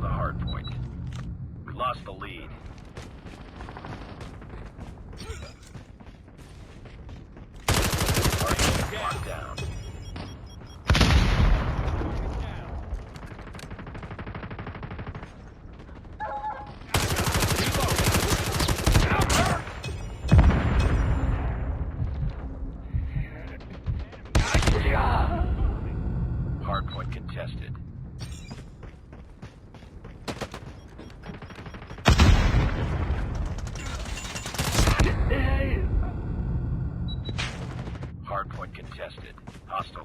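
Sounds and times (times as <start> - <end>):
video game automatic gunfire: 3.0 - 5.0, 7.6 - 9.4, 13.0 - 21.0
video game gunfire: 7.6 - 22.0, 30.2 - 35.3.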